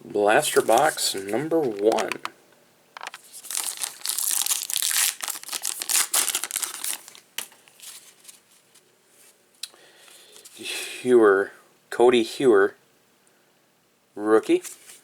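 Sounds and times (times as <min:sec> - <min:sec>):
packaging tearing and crinkling: 0:00.5 - 0:02.2, 0:03.0 - 0:08.0.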